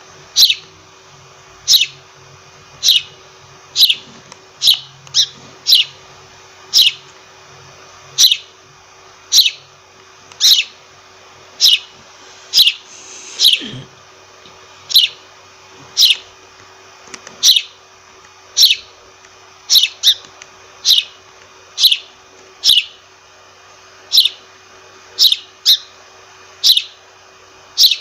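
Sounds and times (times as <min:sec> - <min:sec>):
sparrow chirping: 0:00.3 - 0:00.7, 0:01.6 - 0:02.0, 0:02.8 - 0:06.0, 0:06.7 - 0:07.0, 0:08.2 - 0:08.5, 0:09.3 - 0:09.7, 0:10.4 - 0:10.8, 0:11.6 - 0:13.6, 0:14.9 - 0:15.2, 0:16.0 - 0:16.2, 0:17.4 - 0:17.8, 0:18.6 - 0:18.9, 0:19.7 - 0:20.2, 0:20.8 - 0:21.2, 0:21.8 - 0:23.0, 0:24.1 - 0:24.5, 0:25.2 - 0:25.9, 0:26.6 - 0:27.0, 0:27.8 - 0:28.0.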